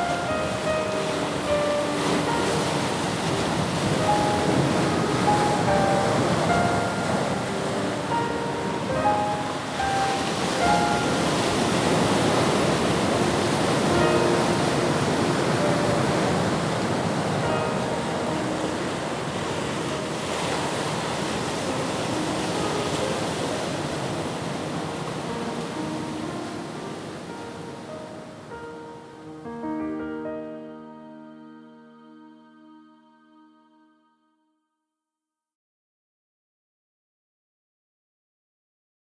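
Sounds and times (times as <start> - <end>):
waves washing onto shore: 0.0 - 29.2
soft background music: 0.0 - 34.2.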